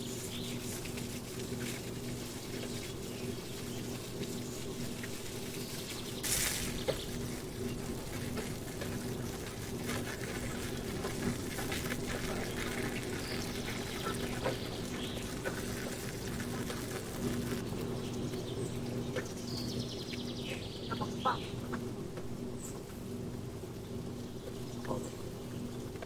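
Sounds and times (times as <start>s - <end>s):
steady low hum: 0.0s - 26.0s
water trickling and splashing: 0.7s - 17.6s.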